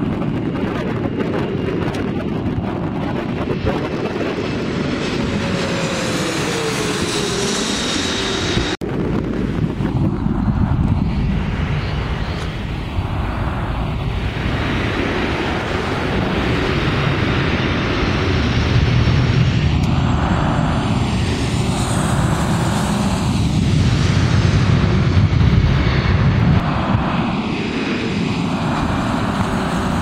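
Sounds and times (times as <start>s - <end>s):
jet airliner passing overhead: 0.0s - 30.0s.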